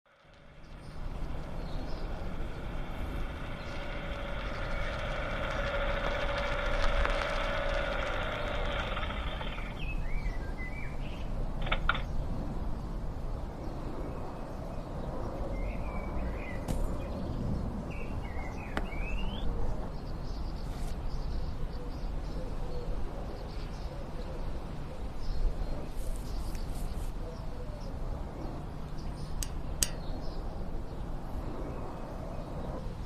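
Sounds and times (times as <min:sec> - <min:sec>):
mechanical noise: 0:00.1 - 0:10.5, 0:11.2 - 0:12.1
small birds chirping: 0:00.1 - 0:12.2, 0:13.6 - 0:33.0
steady low rumble: 0:00.1 - 0:20.6.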